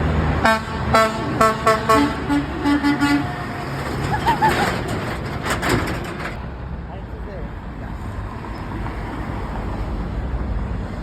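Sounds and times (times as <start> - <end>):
traffic rumbling: 0.0 - 11.0
truck horn honking short blasts: 0.4 - 3.6.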